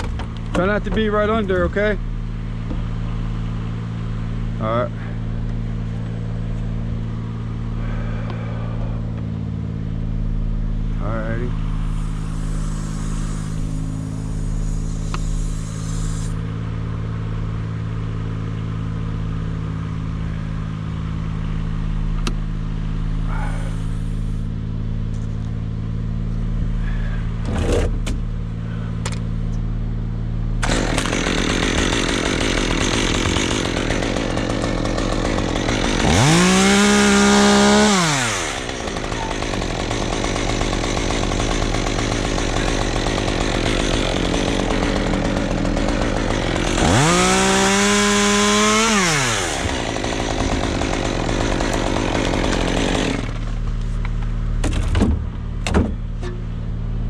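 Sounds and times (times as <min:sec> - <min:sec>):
chainsaw idling and revving: 0:00.0 - 0:21.4, 0:30.5 - 0:54.6
engine idling: 0:00.0 - 0:57.0.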